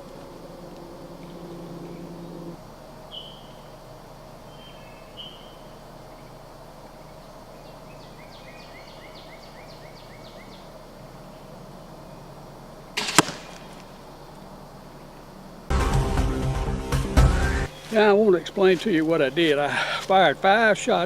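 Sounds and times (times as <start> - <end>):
small bird singing: 0.0 - 12.4, 17.7 - 19.4
faint low hum: 0.0 - 15.7.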